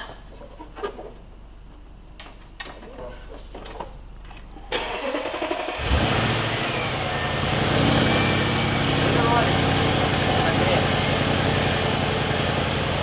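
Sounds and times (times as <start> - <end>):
car engine cranking and starting: 4.7 - 13.0.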